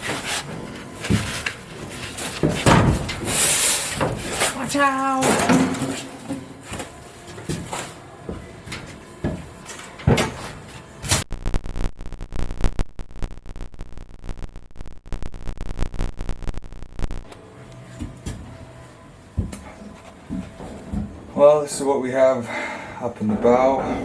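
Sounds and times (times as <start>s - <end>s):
rustling and scraping: 0.0s - 4.6s.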